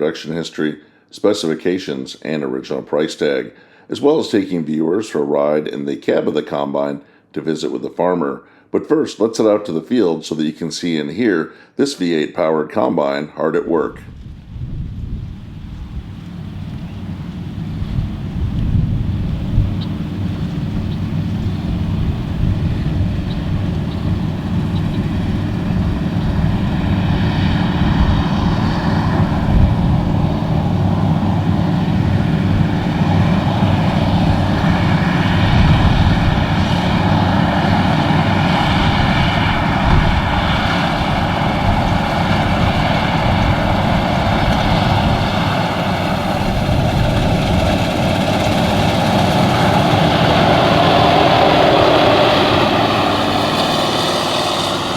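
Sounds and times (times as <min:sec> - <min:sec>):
combine engine low rumble: 0:14.1 - 0:54.9
high whine: 0:14.8 - 0:54.9.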